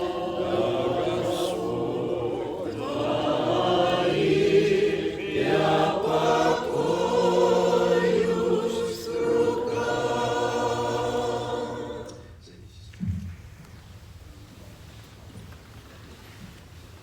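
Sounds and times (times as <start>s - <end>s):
congregation singing a hymn: 0.0s - 12.4s.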